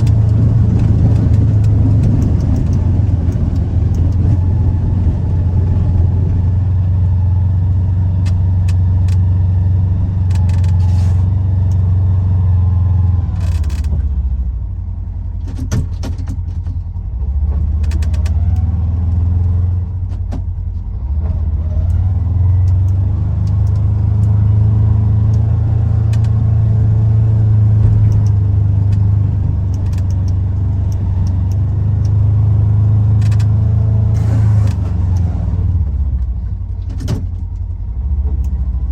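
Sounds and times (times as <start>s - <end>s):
sharp clicks and knocks: 0.0s - 7.2s, 8.2s - 9.4s, 10.0s - 11.8s, 13.3s - 14.2s, 15.4s - 38.7s
utility vehicle engine running: 0.0s - 38.9s.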